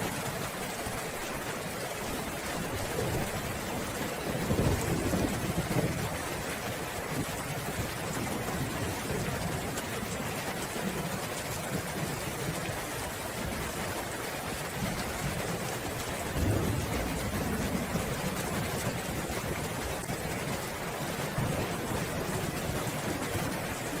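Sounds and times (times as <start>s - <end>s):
steady rain falling: 0.0s - 24.0s
rolling thunder rumbling: 2.7s - 6.6s, 14.8s - 24.0s.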